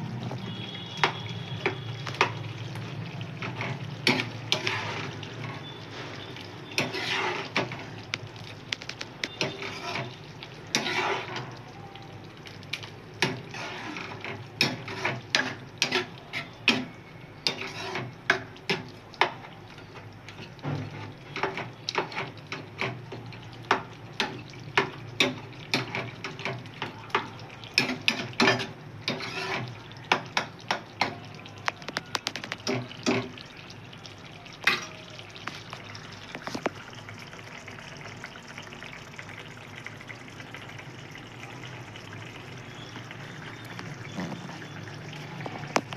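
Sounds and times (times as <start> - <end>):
vegetables sizzling: 0.0 - 37.2, 39.5 - 45.9
spoon clinking and scraping pan: 6.8 - 7.7, 13.6 - 18.5, 27.8 - 31.0.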